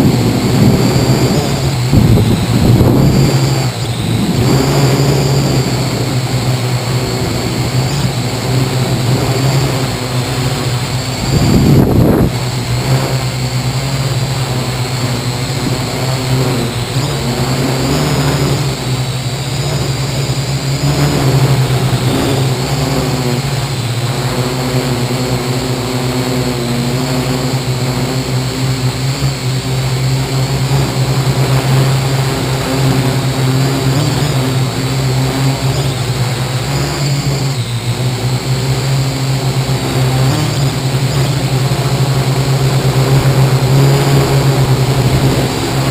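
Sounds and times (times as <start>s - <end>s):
drone propellers humming and whining: 0.0s - 45.9s.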